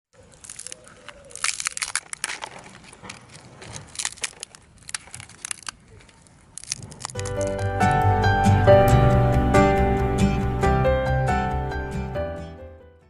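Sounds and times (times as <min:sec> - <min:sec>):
dry crunching and crackling: 0:00.1 - 0:07.9.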